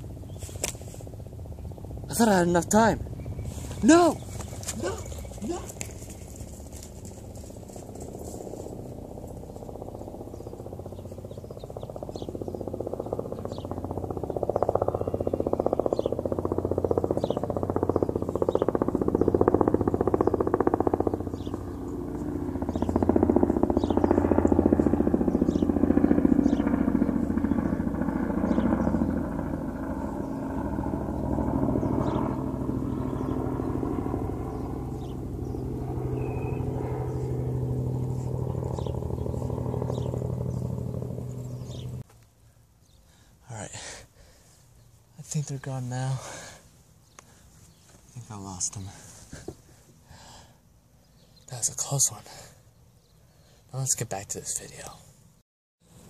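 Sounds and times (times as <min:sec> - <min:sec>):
vehicle engine running: 0:03.0 - 0:42.0.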